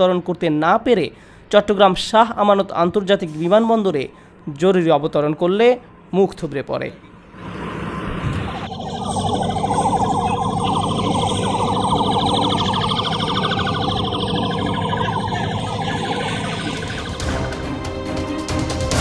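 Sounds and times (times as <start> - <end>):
background noise: 0.0 - 17.3
emergency siren warbling: 7.4 - 18.4.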